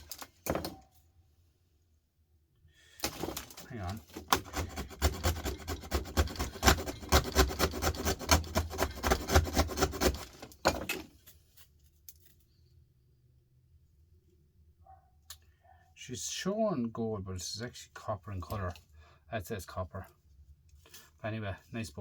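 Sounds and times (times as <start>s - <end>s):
scraping on circuit board: 3.1s - 10.3s.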